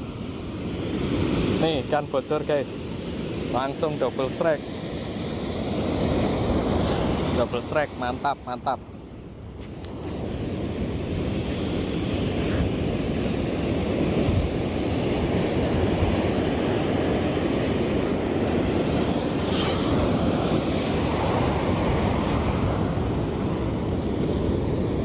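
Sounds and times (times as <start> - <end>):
ocean surf breaking: 0.0 - 25.0
wind buffeting microphone: 9.1 - 25.0.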